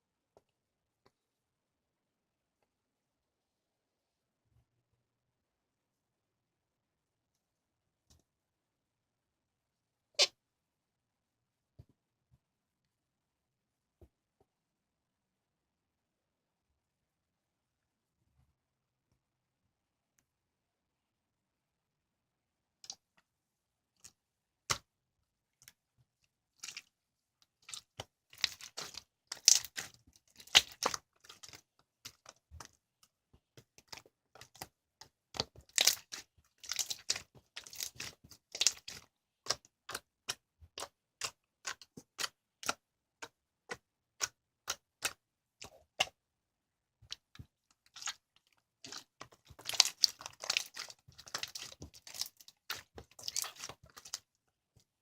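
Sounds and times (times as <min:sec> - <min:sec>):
slime squished by hand: 0:26.5 - 0:46.2, 0:47.0 - 0:54.3.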